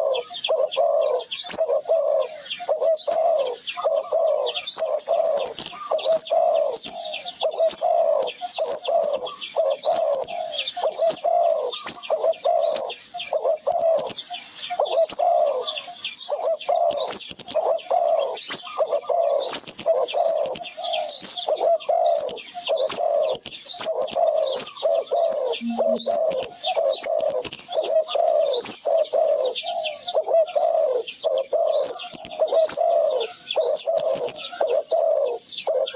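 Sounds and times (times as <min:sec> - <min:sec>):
bird cooing: 0:00.0 - 0:35.9
high rising bird chirps: 0:25.3 - 0:26.8.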